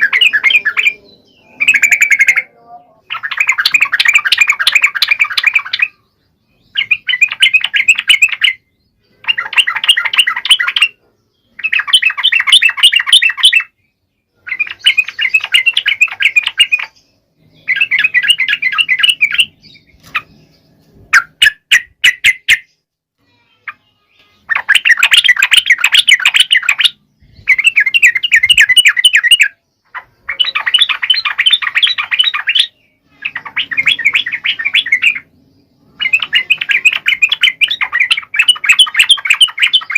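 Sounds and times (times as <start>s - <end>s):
bulbul singing bubbly chattering song: 0.0s - 22.8s, 23.4s - 39.9s.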